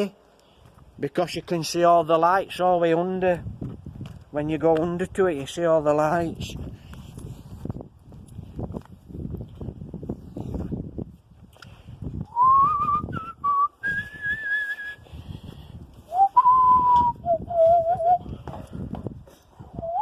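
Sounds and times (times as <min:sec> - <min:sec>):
person whistling: 0:12.3 - 0:15.1, 0:16.1 - 0:18.4, 0:19.8 - 0:20.0.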